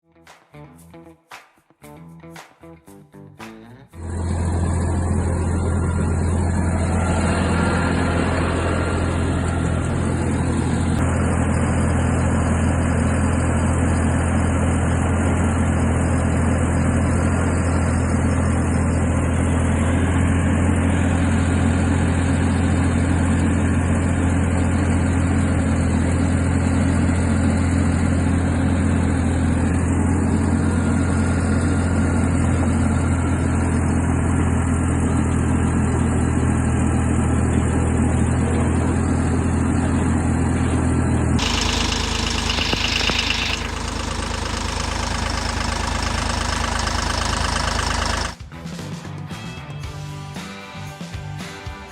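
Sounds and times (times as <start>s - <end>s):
diesel engine running: 4.0s - 48.4s
high-pitched hiss: 41.4s - 43.9s.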